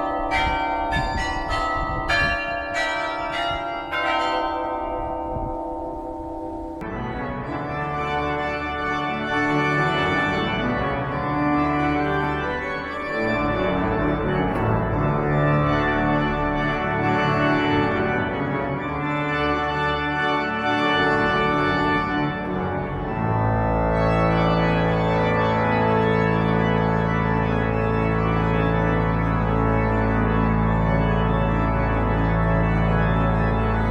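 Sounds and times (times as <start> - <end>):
pipe organ playing chords: 0.0 - 33.9
deep organ pedal bass: 6.4 - 33.9.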